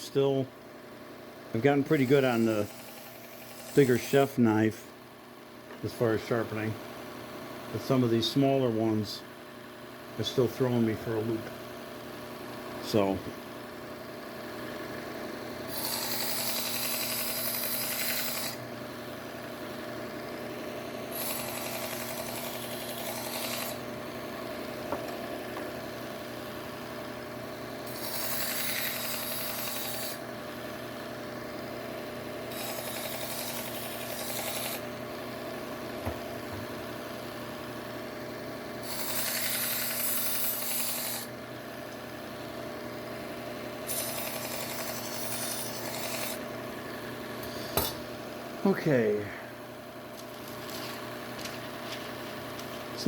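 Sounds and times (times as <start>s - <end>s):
belt sharpener motor hum: 1.6s - 4.4s, 14.3s - 37.0s, 38.7s - 48.1s
knife blade on abrasive belt: 21.1s - 23.8s, 27.9s - 30.2s, 32.5s - 34.8s, 38.8s - 41.3s, 43.8s - 46.4s.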